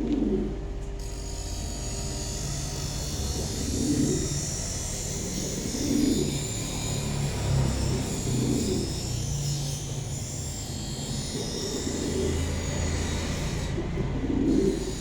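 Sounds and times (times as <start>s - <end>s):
pigeons cooing: 0.0s - 1.8s, 2.6s - 15.0s
low mechanical hum: 0.0s - 15.0s.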